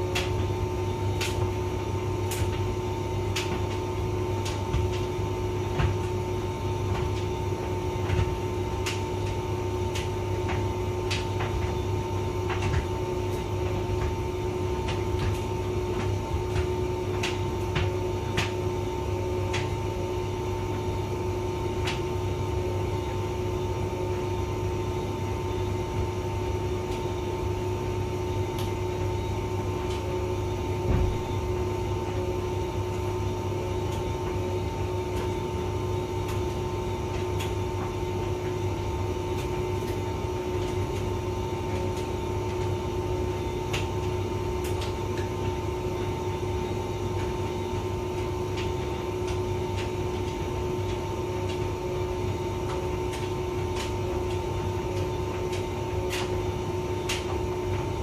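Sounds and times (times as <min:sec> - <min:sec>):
tumble dryer motor hum: 0:00.0 - 0:58.0.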